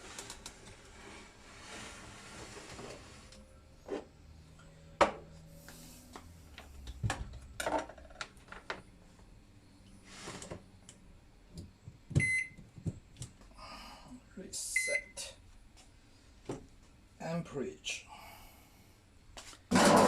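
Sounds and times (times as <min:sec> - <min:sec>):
microwave keypad beep: 0:12.2 - 0:12.6, 0:14.8 - 0:15.2.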